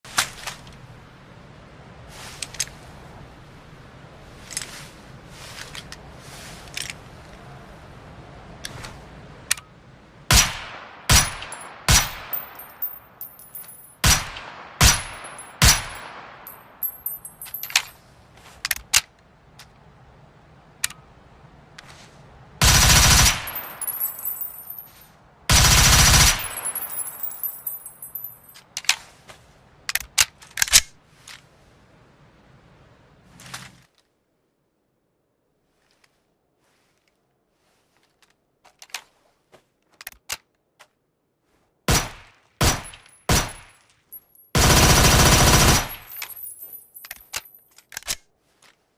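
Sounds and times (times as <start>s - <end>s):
metallic tinkling: 11.4s - 14.0s, 15.0s - 18.0s, 23.4s - 25.2s, 26.4s - 28.6s, 44.1s - 44.6s, 45.9s - 47.8s
submachine gun firing: 22.6s - 23.6s, 25.5s - 26.6s, 41.9s - 43.7s, 44.6s - 46.1s.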